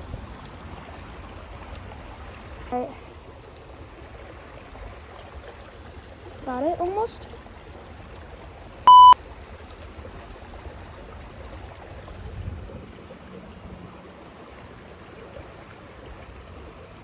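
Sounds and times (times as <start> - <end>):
running water: 0.0 - 17.0
short loud beep: 8.9 - 9.2.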